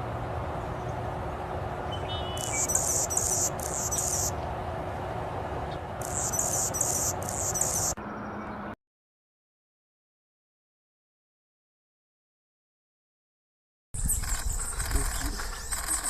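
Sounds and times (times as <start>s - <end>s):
small bird buzzy high notes: 2.0s - 4.3s, 6.0s - 8.0s.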